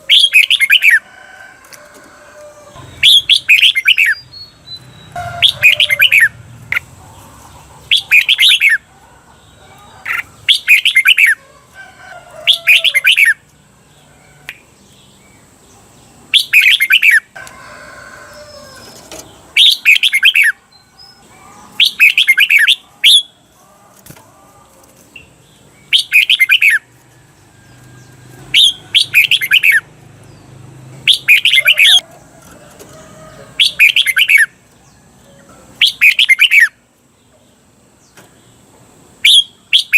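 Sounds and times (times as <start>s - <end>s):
bulbul singing warbled phrases: 0.0s - 1.1s, 2.7s - 11.5s, 12.4s - 17.3s, 18.8s - 24.2s, 25.2s - 26.9s, 28.0s - 32.0s, 33.3s - 35.0s, 35.8s - 36.8s.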